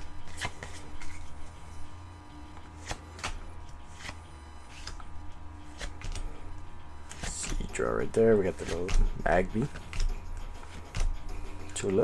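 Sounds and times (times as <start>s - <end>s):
cards flicking: 0.0s - 1.6s, 2.5s - 6.5s, 7.1s - 12.0s
low steady hum: 0.0s - 12.0s.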